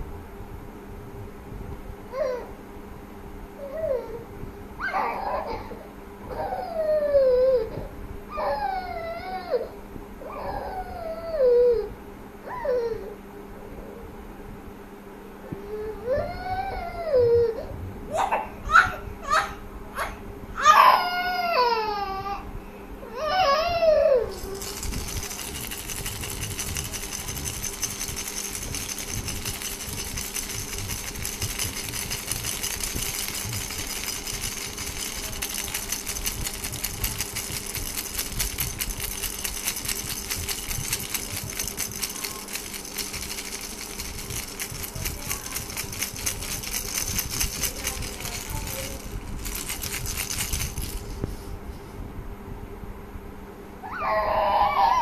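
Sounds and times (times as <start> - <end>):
baby's fake cry: 4.8 - 7.8, 20.6 - 22.4, 23.1 - 24.6, 53.8 - 55.0
baby's rattle shaken: 24.0 - 51.5.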